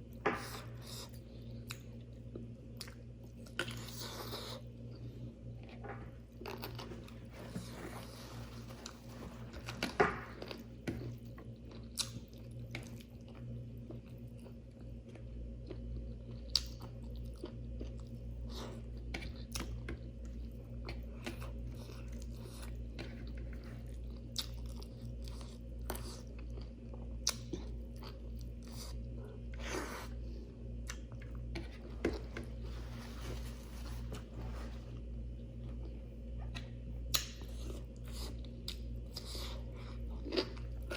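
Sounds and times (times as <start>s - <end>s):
food crunching: 5.6s - 30.1s.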